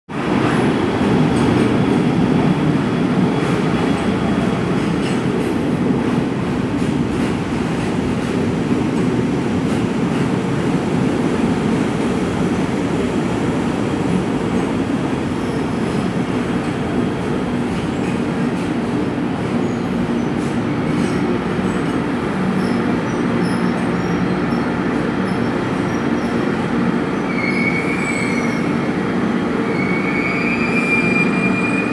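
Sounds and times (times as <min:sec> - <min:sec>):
train wheels rumbling on rail: 0:00.1 - 0:31.9
wheel squeal: 0:29.7 - 0:31.9.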